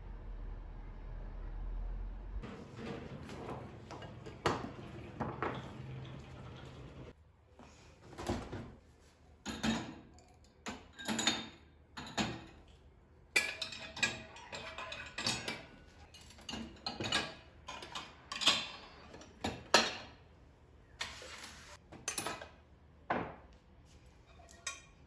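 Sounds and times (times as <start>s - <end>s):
dishes and utensils clinking: 2.4s - 7.1s, 13.4s - 20.2s, 24.2s - 25.0s.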